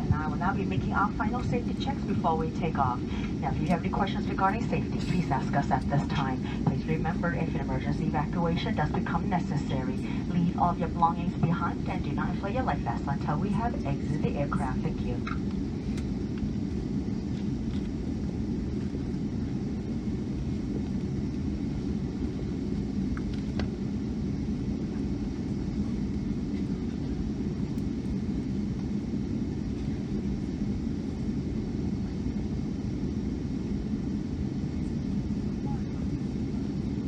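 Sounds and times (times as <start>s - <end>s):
air-conditioning running: 0.0s - 19.6s
aircraft cabin engine rumble: 0.0s - 37.0s.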